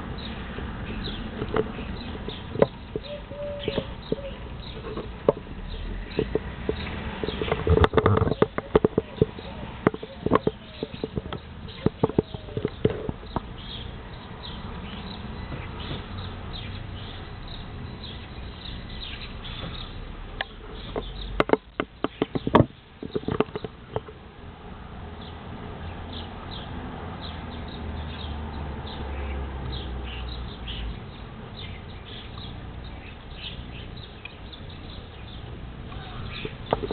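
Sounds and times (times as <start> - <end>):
birds chirping: 0.0 - 36.9
sharp knocks and clicks: 1.4 - 3.1, 3.7 - 13.5, 20.4 - 24.2, 36.4 - 36.9.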